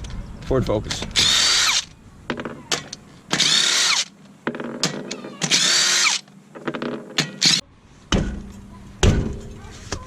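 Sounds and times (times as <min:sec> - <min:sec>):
cordless power tool whining: 0:01.2 - 0:01.9, 0:03.4 - 0:04.1, 0:05.5 - 0:06.2.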